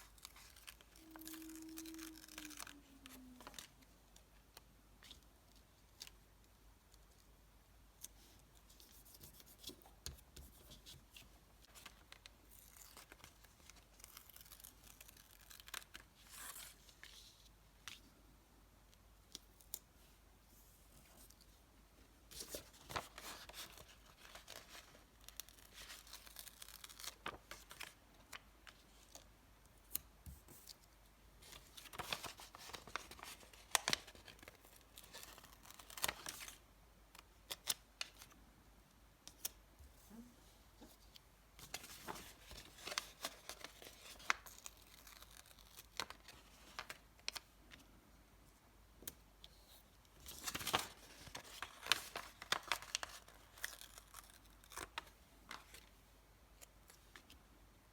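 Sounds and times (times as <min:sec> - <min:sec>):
paper crinkling: 0:00.0 - 0:03.8, 0:22.3 - 0:29.2, 0:31.4 - 0:36.6, 0:41.6 - 0:47.4, 0:50.3 - 0:55.9.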